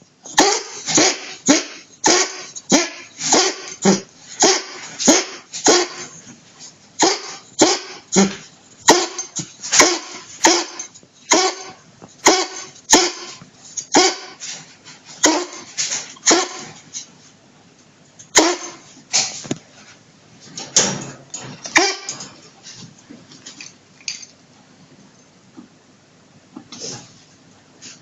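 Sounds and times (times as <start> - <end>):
dog coughing: 0.3 - 6.2, 7.0 - 14.4, 15.2 - 16.8, 18.3 - 18.8, 21.7 - 22.3.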